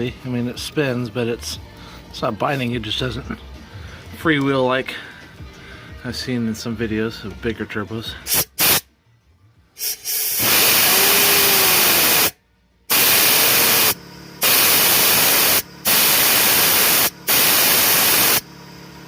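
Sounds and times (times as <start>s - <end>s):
compressed air hissing: 8.2s - 8.9s, 9.8s - 18.5s
turbocharger whistle: 9.8s - 18.5s.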